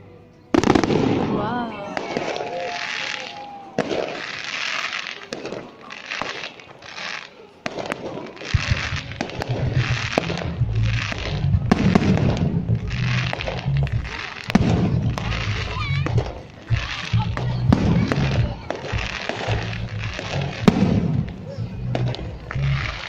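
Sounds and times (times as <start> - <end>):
fireworks crackling and banging: 0.5 - 23.0
bass-heavy music: 8.6 - 23.0.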